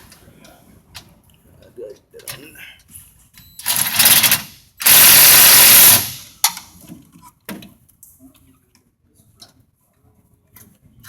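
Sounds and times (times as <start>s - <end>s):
cordless power tool running: 4.0s - 6.2s.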